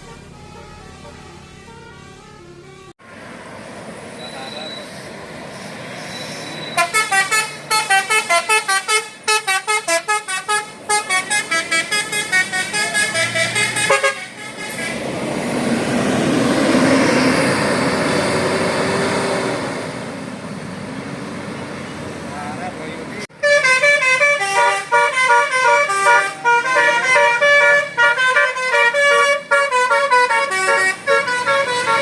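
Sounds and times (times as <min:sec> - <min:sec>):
bus horn tune of short toots: 0:00.0 - 0:02.8, 0:06.6 - 0:15.0, 0:23.4 - 0:32.0.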